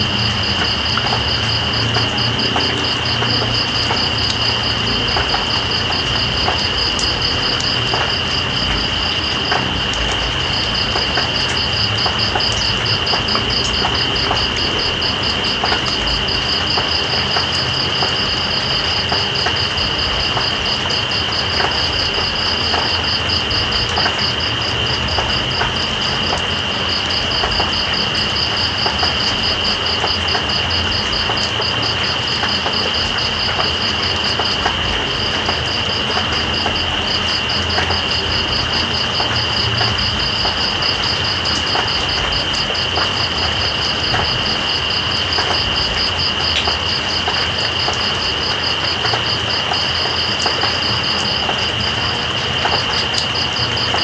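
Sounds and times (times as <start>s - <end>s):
insect rapid high pulsing: 0.0s - 54.0s
rain falling: 0.0s - 54.0s.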